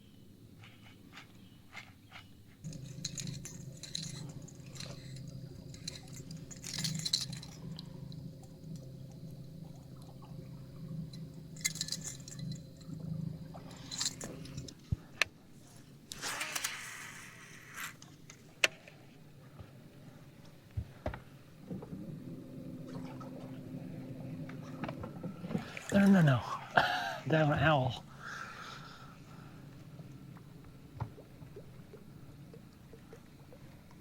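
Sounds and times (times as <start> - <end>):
metallic clinks and rattles: 2.6 - 10.2, 11.0 - 14.8
brief hiss: 16.1 - 18.0
small motor humming: 16.1 - 18.0.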